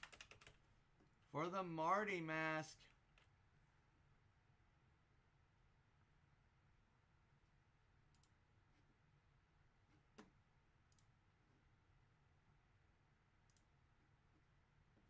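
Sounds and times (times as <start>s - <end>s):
faint clicks: 8.1s - 8.4s, 13.5s - 13.8s.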